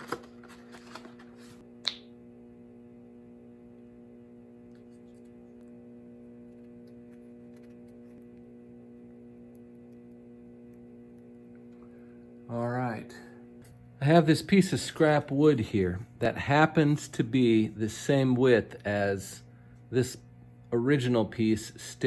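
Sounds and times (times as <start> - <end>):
electrical hum: 0.0 - 22.0.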